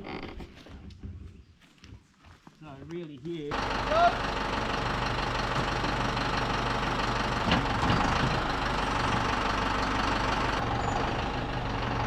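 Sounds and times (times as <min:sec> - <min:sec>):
engine idling: 0:03.5 - 0:12.0.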